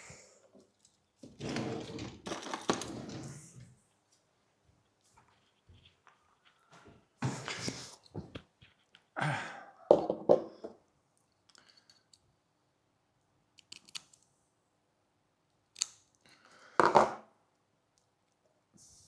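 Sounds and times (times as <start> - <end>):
hands rustling tape and line: 3.6 - 9.2
small clicks: 13.6 - 14.3.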